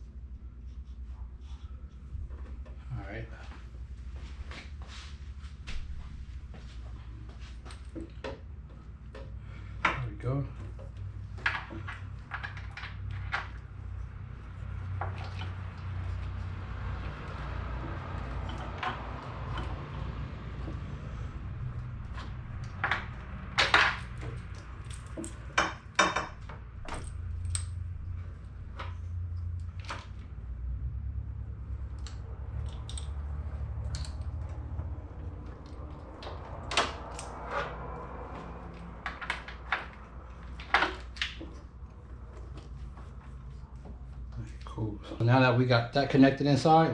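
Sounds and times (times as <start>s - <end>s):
metallic clicks and clinks: 22.6s - 28.0s, 31.8s - 34.7s.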